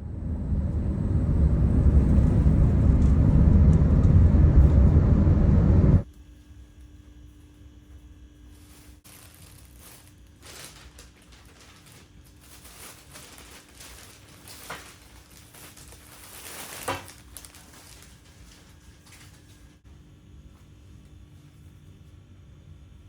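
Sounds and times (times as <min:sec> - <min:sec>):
steady low hum: 0:00.0 - 0:06.1
rustling and handling noises: 0:08.4 - 0:19.8.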